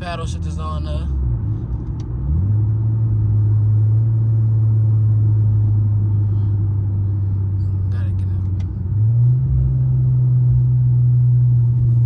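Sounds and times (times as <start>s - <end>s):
car engine accelerating: 0.0s - 12.0s.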